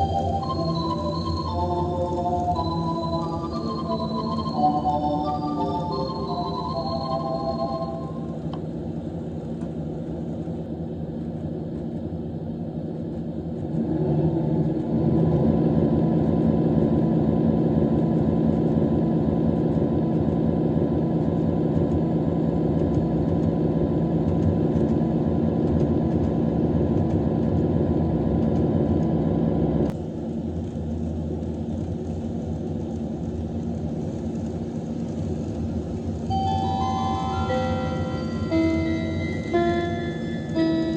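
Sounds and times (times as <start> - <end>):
diesel railcar engine: 0.0 - 40.9
chime: 36.3 - 40.9.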